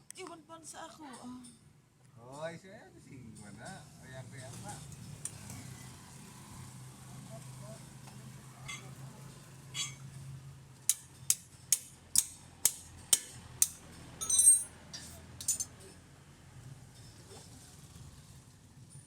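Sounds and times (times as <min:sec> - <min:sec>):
ringing metal clink: 0:08.7 - 0:08.9, 0:09.8 - 0:10.0, 0:13.2 - 0:15.9
sharp metal taps: 0:09.8 - 0:10.0, 0:10.9 - 0:15.8.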